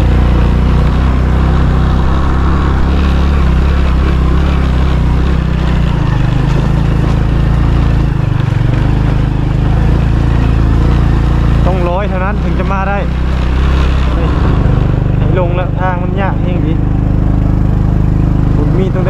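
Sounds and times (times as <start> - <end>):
vehicle engine droning: 0.0 - 19.0.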